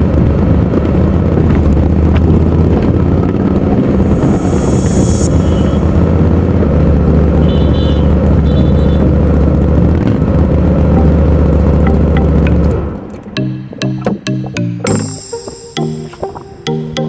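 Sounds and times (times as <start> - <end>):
road and wind noise: 0.0 - 14.2
short high tones: 4.0 - 6.4, 11.8 - 17.0.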